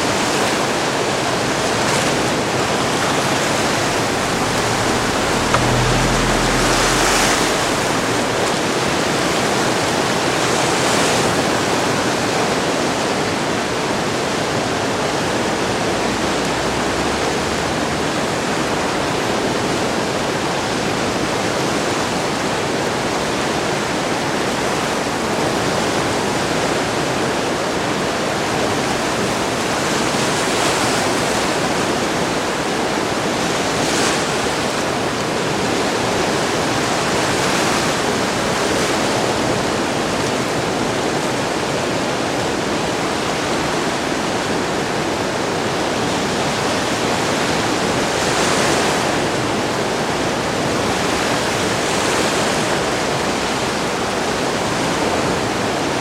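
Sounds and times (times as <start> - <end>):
flooded river roaring: 0.0 - 12.4.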